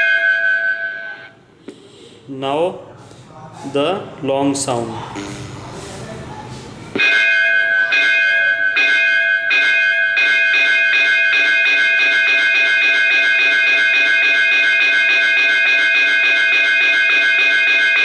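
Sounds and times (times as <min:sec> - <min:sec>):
metal school bell ringing: 0:00.0 - 0:01.4, 0:07.0 - 0:18.0.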